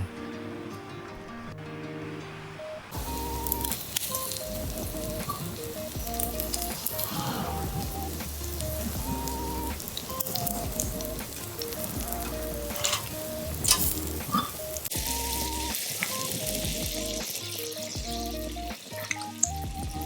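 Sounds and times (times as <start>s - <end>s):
fire crackling: 0.0s - 20.0s
light background music: 0.0s - 20.0s
food sizzling on a grill: 3.0s - 19.6s.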